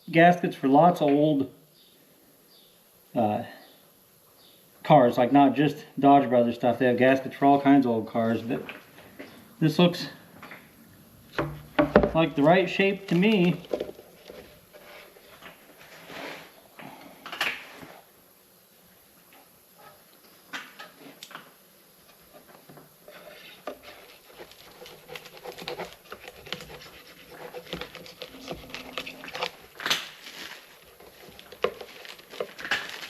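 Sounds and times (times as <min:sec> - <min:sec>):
knocks on plywood: 0:11.4 - 0:12.2
scraping: 0:23.1 - 0:33.0
packing rustling: 0:23.5 - 0:33.0.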